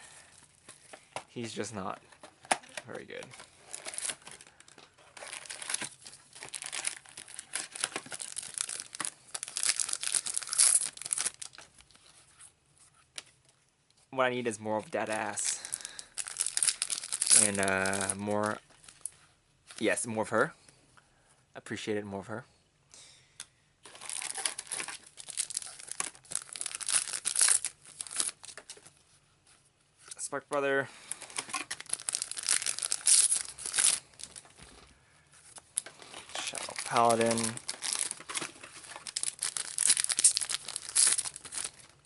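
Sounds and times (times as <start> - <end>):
wrappers tearing and crinkling: 2.6 - 12.0, 15.0 - 19.1, 23.9 - 28.8, 31.0 - 34.5, 35.5 - 42.0.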